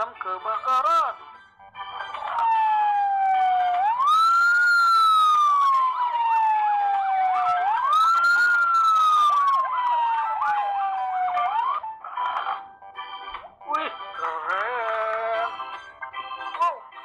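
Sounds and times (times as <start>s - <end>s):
toy siren wailing: 2.2s - 12.4s.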